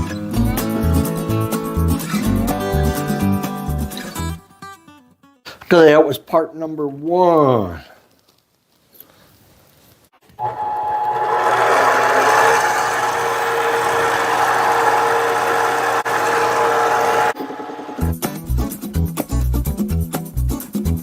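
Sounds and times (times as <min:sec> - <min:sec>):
guitar music: 0:00.0 - 0:05.4
lathe whining: 0:10.3 - 0:18.0.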